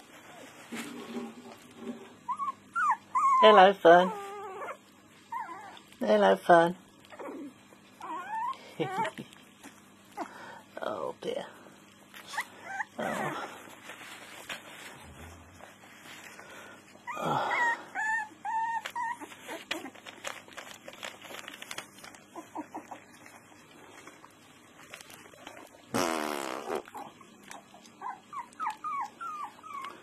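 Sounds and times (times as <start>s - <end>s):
puppy crying: 2.2s - 5.9s, 7.1s - 10.3s, 12.2s - 13.7s, 17.0s - 20.1s, 22.2s - 23.3s, 26.8s - 30.0s
puppies whimpering: 2.2s - 6.0s, 7.0s - 10.4s, 12.1s - 13.9s, 15.3s - 20.7s, 22.2s - 23.6s, 26.9s - 30.0s.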